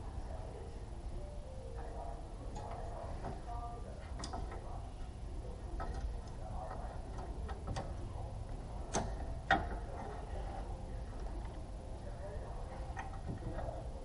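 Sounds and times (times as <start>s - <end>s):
low steady rumble: 0.0s - 14.0s
tools and car parts clicking: 4.2s - 4.8s, 5.8s - 8.1s, 8.8s - 10.2s.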